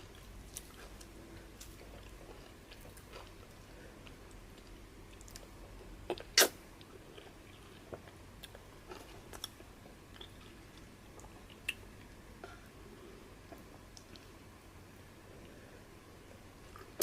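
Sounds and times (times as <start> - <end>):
man chewing food: 0.0 - 12.7.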